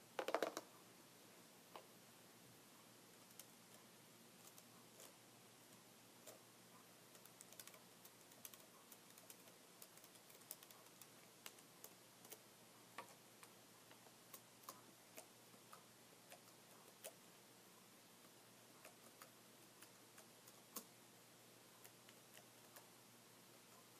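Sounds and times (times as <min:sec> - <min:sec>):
faint steady hiss: 0:00.0 - 0:23.9
typing on computer keyboard: 0:07.1 - 0:12.4.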